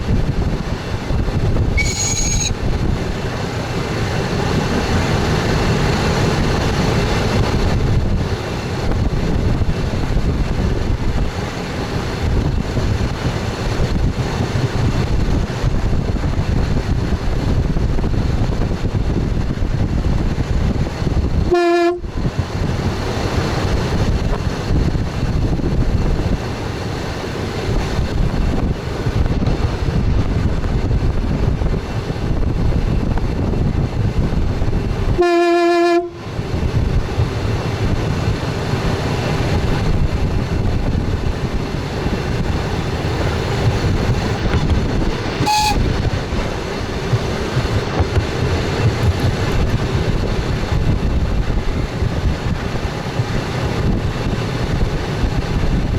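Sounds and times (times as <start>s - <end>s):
train wheels rumbling on track: 0.0s - 55.9s
short high tone: 1.8s - 2.6s.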